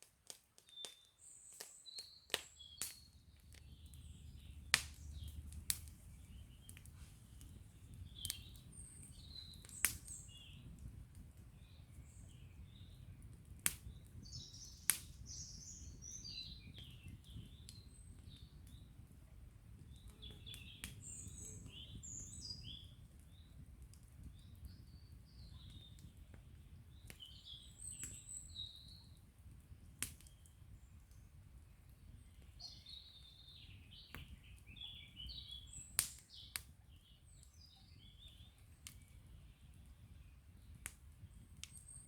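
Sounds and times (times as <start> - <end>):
campfire crackling and popping: 0.0 - 42.0
songbirds chirping: 0.6 - 42.0.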